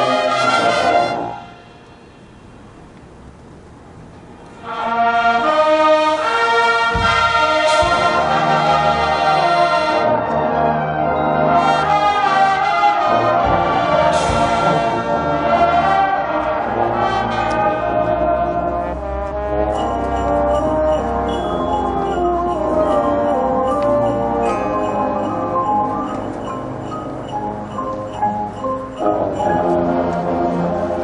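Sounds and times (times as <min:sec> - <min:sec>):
marching band brass chords: 0:00.0 - 0:03.3, 0:04.5 - 0:31.0
low drum hits and crashes: 0:13.4 - 0:15.0.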